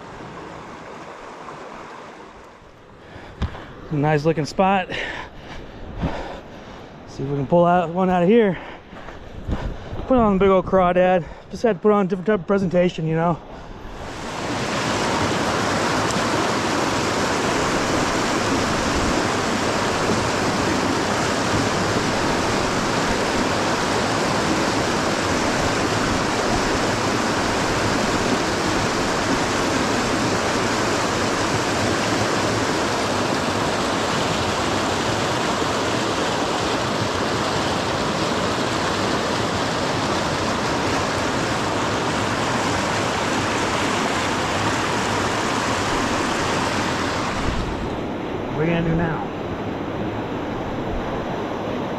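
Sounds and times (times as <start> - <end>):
river water rushing over rocks: 0.0 - 2.7, 13.8 - 51.9.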